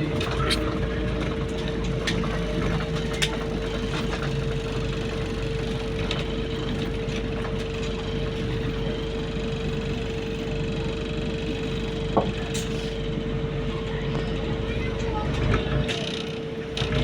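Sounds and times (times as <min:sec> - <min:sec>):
bus interior fittings rattling: 0:00.0 - 0:10.4
bus ride hum and whine: 0:00.0 - 0:17.0.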